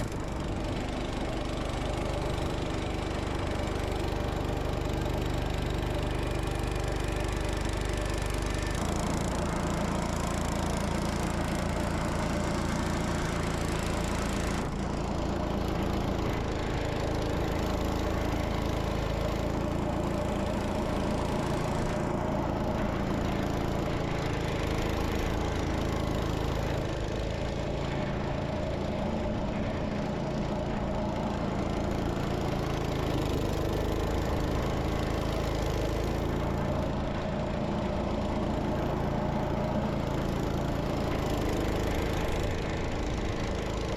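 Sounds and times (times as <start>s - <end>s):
engine droning: 0.0s - 43.9s.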